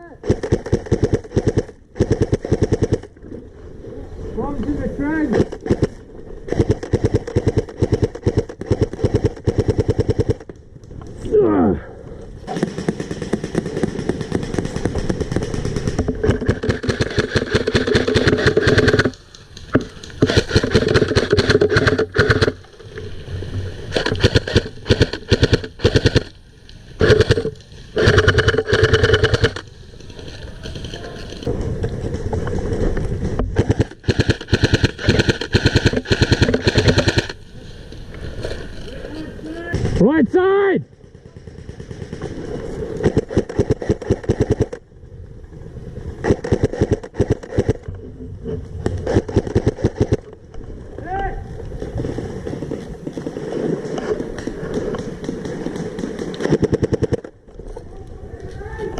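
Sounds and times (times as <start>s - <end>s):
airsoft rifle full-auto bursts: 0.2s - 3.1s, 6.5s - 10.4s, 12.5s - 19.2s, 20.2s - 22.6s, 23.9s - 26.4s, 27.0s - 29.7s, 33.6s - 37.4s.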